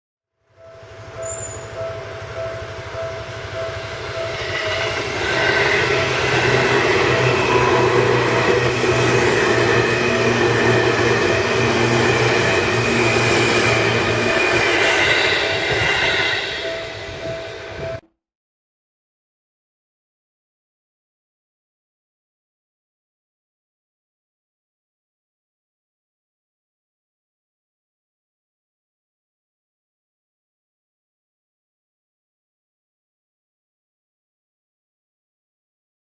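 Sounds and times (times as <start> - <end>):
train rumble passing: 0.5 - 18.1
level-crossing bell ringing: 0.6 - 18.0.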